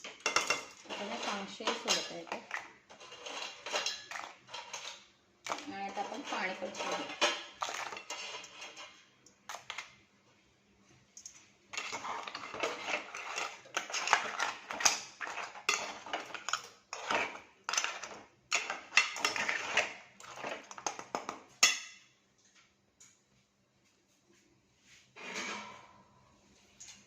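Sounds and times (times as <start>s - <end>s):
metal utensil scraping cooking pot: 0.0s - 9.0s, 11.7s - 21.8s, 25.2s - 25.9s.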